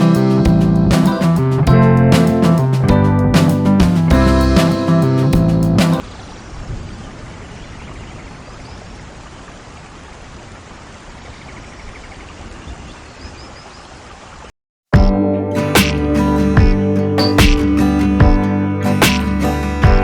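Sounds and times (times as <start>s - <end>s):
acoustic guitar music: 0.0s - 6.0s, 15.0s - 20.0s
steady rainfall: 6.0s - 11.2s.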